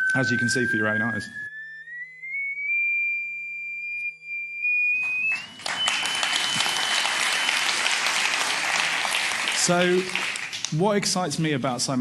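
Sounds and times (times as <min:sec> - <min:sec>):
high pure tone stepping up: 0:00.0 - 0:08.0
audience applause: 0:05.0 - 0:11.0.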